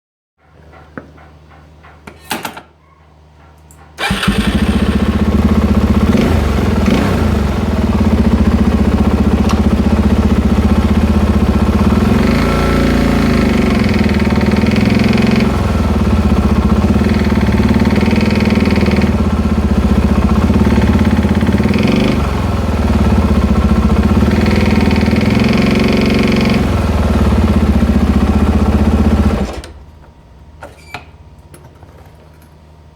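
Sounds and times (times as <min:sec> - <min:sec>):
engine knocking: 0:04.0 - 0:29.5
motorcycle engine revving: 0:04.0 - 0:29.6.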